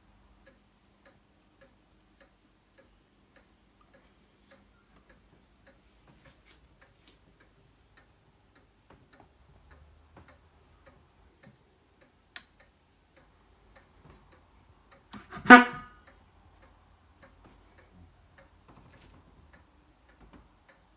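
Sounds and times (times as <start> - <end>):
faint ticking: 0.0 - 20.9
car horn honk: 15.2 - 16.0.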